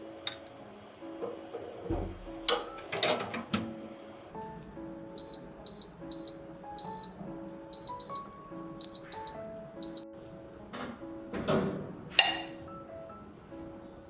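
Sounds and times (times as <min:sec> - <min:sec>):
background music: 0:00.0 - 0:14.0
high-pitched appliance beeps: 0:05.2 - 0:10.0.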